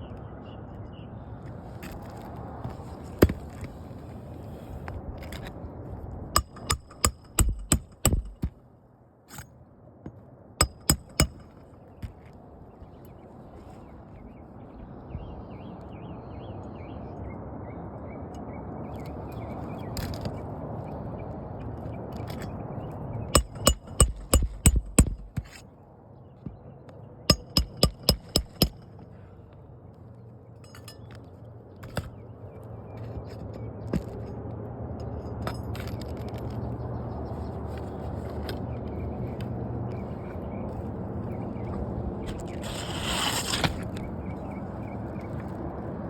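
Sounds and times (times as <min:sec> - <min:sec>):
hammer driving nails: 0:06.4 - 0:08.5, 0:10.6 - 0:11.6, 0:23.4 - 0:25.6, 0:27.3 - 0:28.8.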